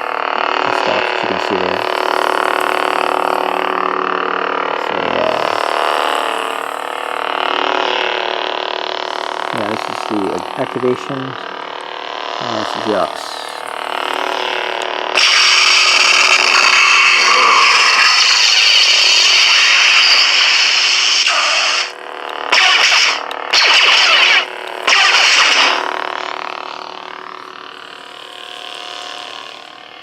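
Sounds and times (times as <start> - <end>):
lightsaber blade hum: 12.4 - 29.9
lightsaber noise bursts: 15.2 - 26.0.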